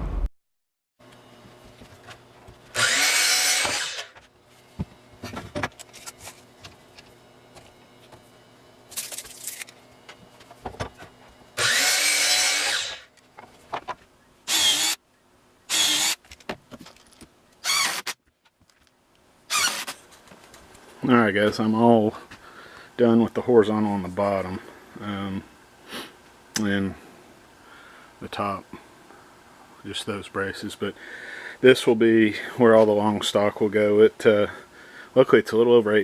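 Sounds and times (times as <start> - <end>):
power drill whining: 2.7 - 4.2, 11.6 - 13.1, 14.5 - 15.0, 15.7 - 16.2, 17.6 - 18.2, 19.5 - 20.0.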